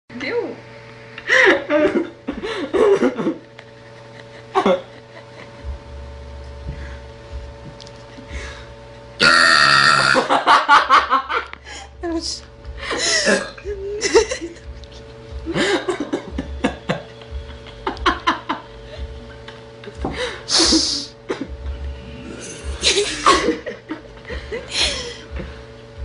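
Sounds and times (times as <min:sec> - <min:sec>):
people laughing and giggling: 0:01.2 - 0:05.8, 0:10.2 - 0:11.9, 0:12.8 - 0:21.6, 0:22.6 - 0:25.6.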